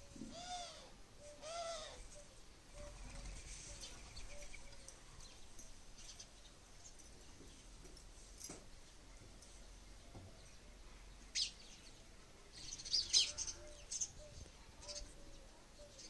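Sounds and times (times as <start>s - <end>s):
small birds chirping: 0.0s - 16.0s
peacock wailing calls: 0.3s - 4.6s.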